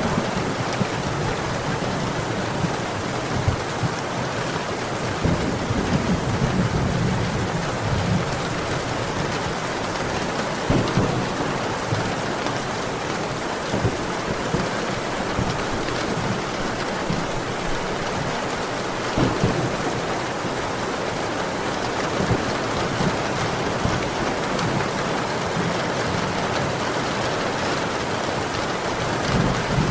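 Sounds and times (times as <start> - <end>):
distant thunder rumbling: 0.0 - 26.8, 28.9 - 29.9
heavy rain pouring: 0.0 - 29.9
rain spatters: 0.0 - 29.9.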